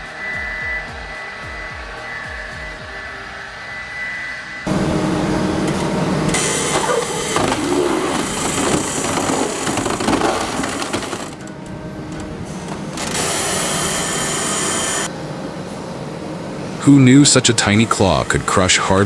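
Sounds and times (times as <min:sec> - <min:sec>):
wood-processing machine grinding: 0:04.7 - 0:11.4.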